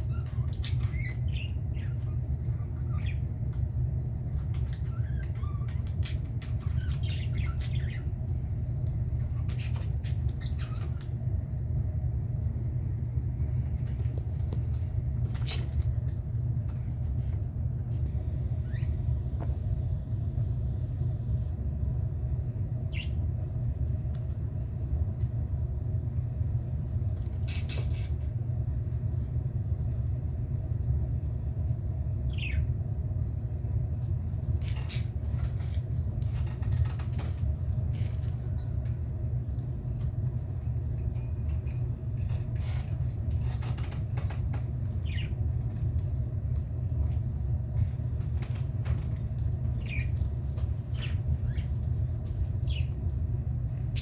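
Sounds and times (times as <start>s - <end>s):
budgerigars chirping: 0.0s - 3.2s, 4.7s - 8.1s, 22.9s - 23.2s, 32.3s - 32.7s, 45.0s - 45.4s, 49.8s - 50.2s, 50.9s - 51.7s, 52.6s - 53.0s
steady low rumble: 0.0s - 54.0s
rustling and fluttering: 13.2s - 18.9s, 33.9s - 54.0s.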